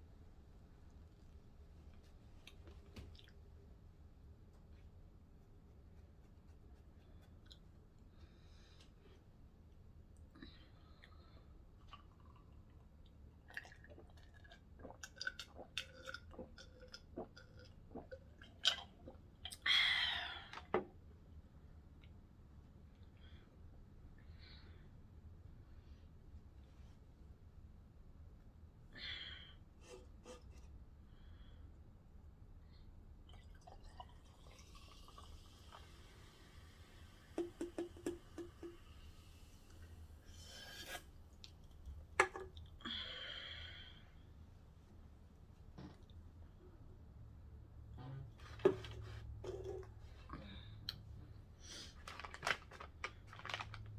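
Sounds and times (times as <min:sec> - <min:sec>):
faint eating and mouth sounds: 0:00.7 - 0:09.3, 0:10.2 - 0:19.7, 0:29.8 - 0:31.3, 0:33.2 - 0:47.0, 0:48.0 - 0:53.9.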